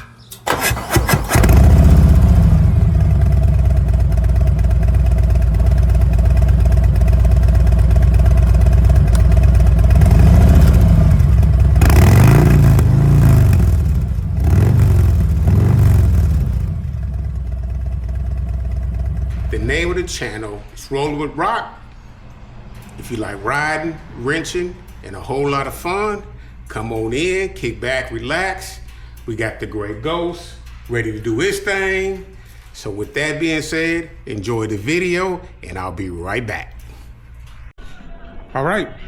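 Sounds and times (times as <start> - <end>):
motorcycle engine starting and idling: 0.3 - 20.7
motorcycle engine revving: 0.5 - 20.2.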